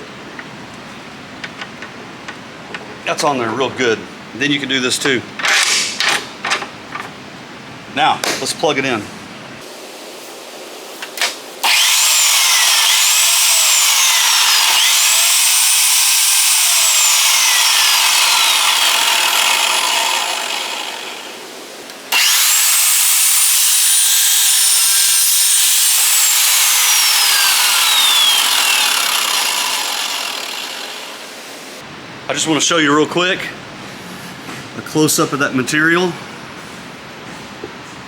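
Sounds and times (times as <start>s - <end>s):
chop saw cutting steel tubing: 5.4s - 6.2s, 11.2s - 21.4s, 22.1s - 31.4s.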